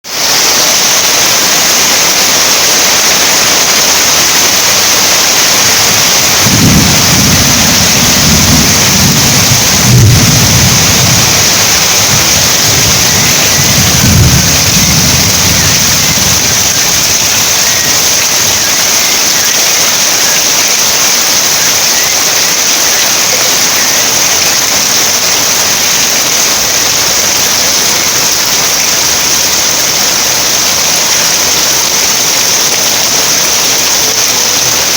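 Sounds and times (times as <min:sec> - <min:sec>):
heavy rain falling: 0:00.0 - 0:34.9
rolling thunder: 0:05.7 - 0:18.8.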